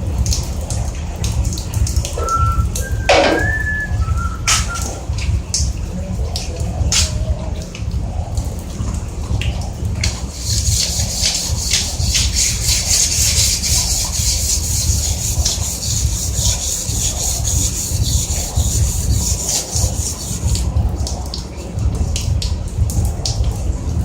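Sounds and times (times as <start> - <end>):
low rumble: 0.0 - 12.2
abrasive rubbing on metal casing: 2.2 - 5.1, 10.2 - 21.2.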